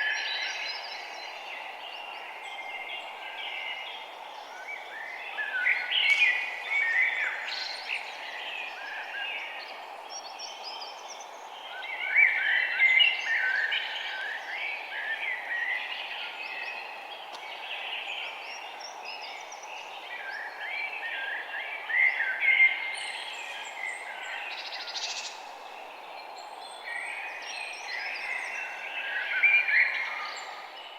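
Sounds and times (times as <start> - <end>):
birds chirping and twittering: 0.0 - 30.9
steady background hiss: 0.0 - 30.9.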